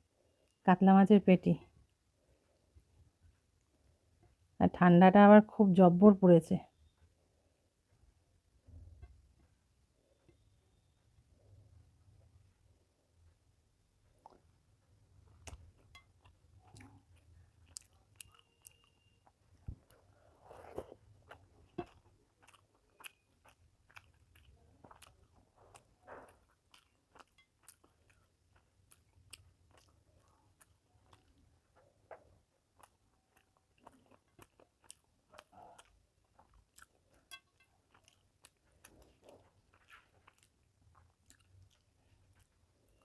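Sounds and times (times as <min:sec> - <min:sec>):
person chewing: 0:14.0 - 0:43.0.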